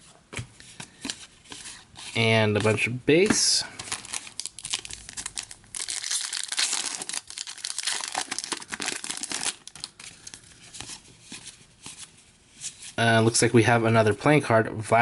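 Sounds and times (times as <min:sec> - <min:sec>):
wrapper crinkling: 0:03.8 - 0:11.5.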